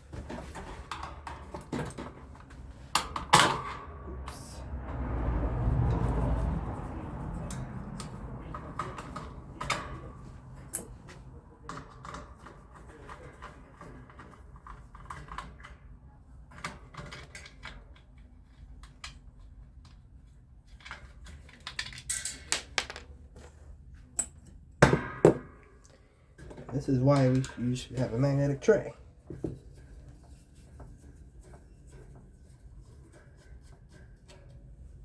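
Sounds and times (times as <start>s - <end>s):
small metal parts clicking: 21.3s - 23.0s.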